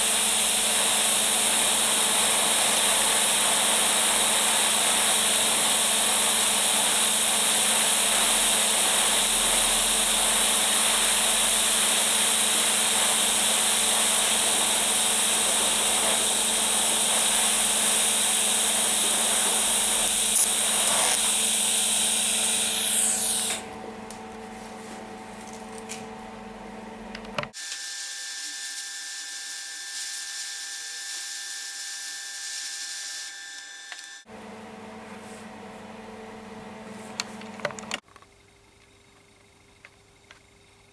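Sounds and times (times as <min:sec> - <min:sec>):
welding arc hissing: 0:00.0 - 0:23.6.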